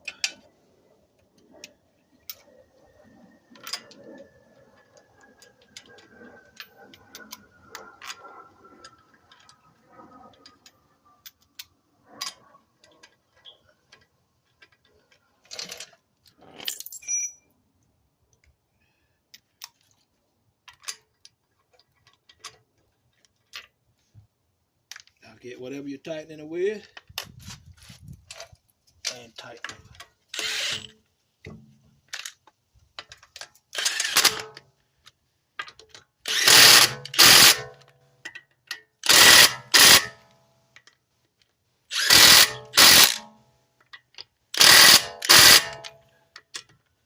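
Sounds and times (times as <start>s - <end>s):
metallic clicks and clinks: 10.4s - 17.5s
bolts threaded into wheel hub: 28.2s - 46.9s.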